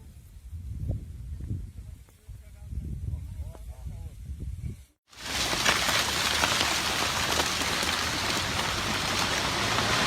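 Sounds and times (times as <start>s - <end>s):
heavy rain pouring: 5.1s - 10.0s.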